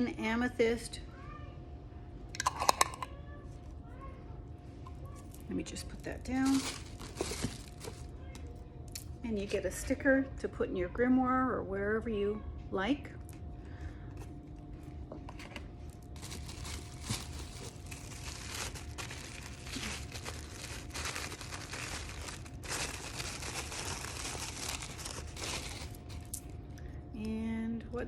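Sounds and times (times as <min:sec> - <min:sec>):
wrapping crinkling and tearing: 0:05.0 - 0:09.1, 0:15.8 - 0:26.6.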